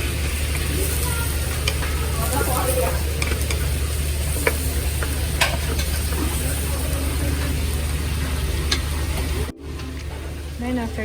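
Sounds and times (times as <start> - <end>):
utensil clicking against pan: 0.0 - 6.7
garlic sizzling in oil: 0.0 - 11.0.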